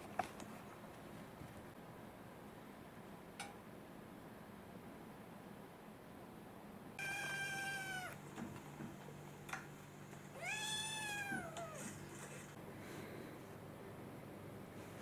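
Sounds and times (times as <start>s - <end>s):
cat meowing: 7.0s - 8.2s, 10.4s - 12.0s.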